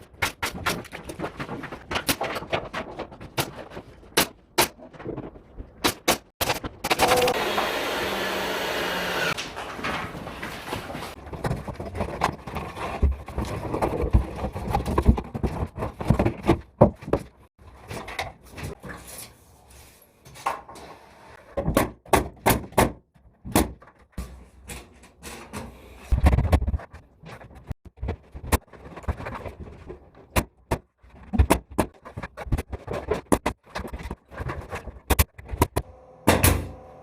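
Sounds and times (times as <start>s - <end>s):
knocks clicks and thumps: 26.1s - 36.6s.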